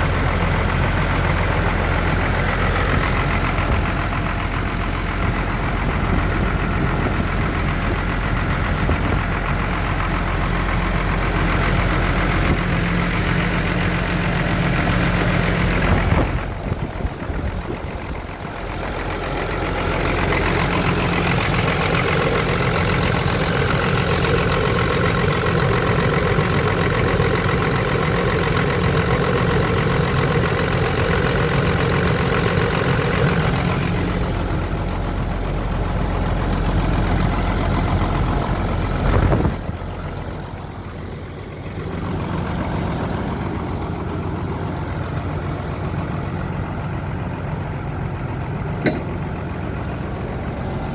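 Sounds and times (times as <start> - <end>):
diesel engine idling: 0.0 - 50.9.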